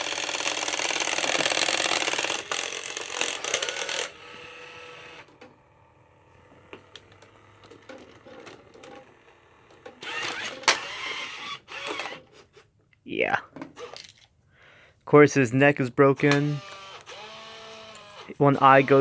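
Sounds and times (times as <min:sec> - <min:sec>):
toy robot gear motor whir: 0:00.0 - 0:05.3, 0:08.2 - 0:12.7, 0:13.8 - 0:14.2, 0:16.3 - 0:19.0
faint servo whirs: 0:00.0 - 0:12.7, 0:16.2 - 0:19.0.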